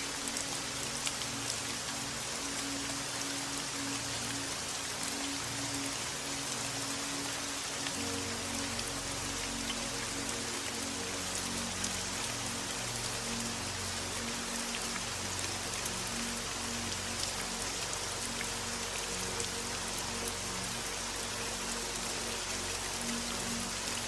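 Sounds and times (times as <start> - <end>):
soft low sustained music: 0.0 - 24.0
steady rain: 0.0 - 24.0.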